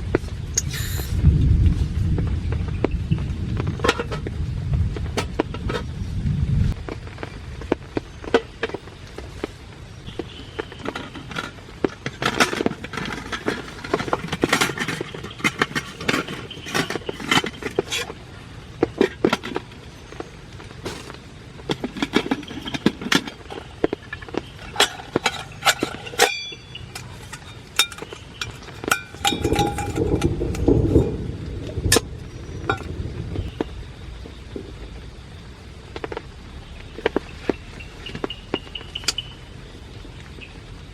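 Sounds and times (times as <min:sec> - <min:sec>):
steady rain: 0:00.0 - 0:40.9
metallic clink: 0:24.6 - 0:30.7.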